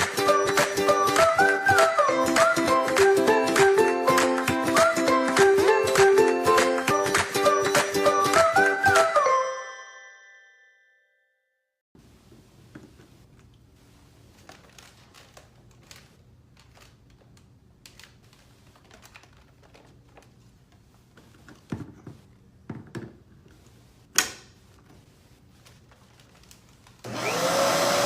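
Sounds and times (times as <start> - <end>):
vacuum cleaner running: 27.0 - 28.0.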